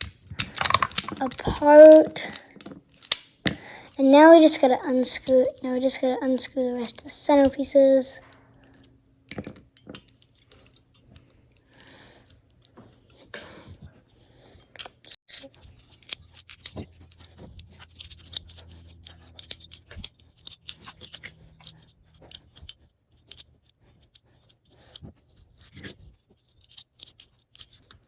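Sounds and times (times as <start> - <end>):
plastic cube pieces clicking: 0.0 - 3.6.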